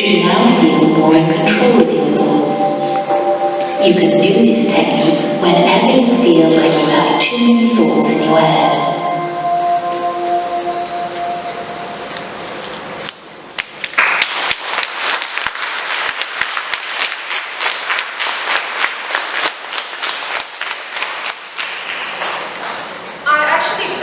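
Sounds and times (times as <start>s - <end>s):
audience applauding: 12.1s - 23.1s.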